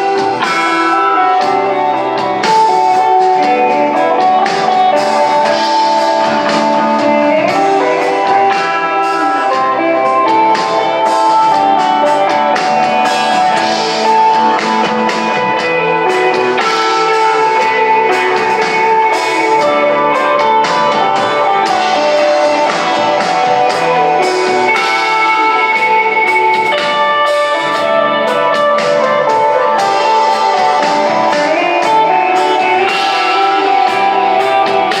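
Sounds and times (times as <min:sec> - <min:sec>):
drums with cymbal hits: 0:00.0 - 0:35.0
electric guitar ringing notes: 0:00.0 - 0:35.0.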